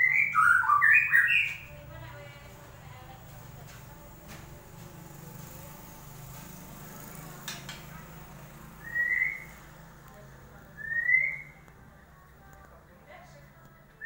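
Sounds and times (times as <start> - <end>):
short rising whistles: 8.8 - 9.6.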